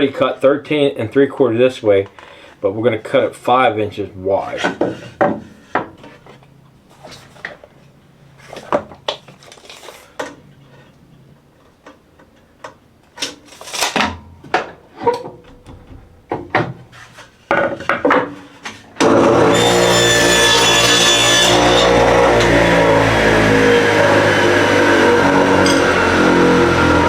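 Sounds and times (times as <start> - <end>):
table saw running: 19.0 - 27.0.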